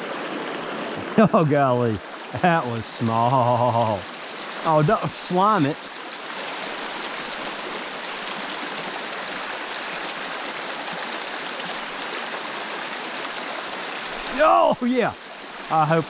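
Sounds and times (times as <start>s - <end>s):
creek water running over rocks: 0.0s - 16.0s.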